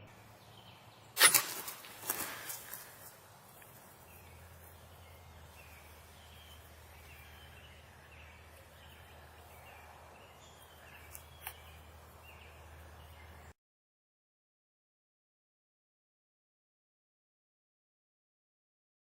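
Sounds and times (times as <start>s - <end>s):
bird calls: 0.0s - 13.5s
low steady hum: 0.0s - 13.5s.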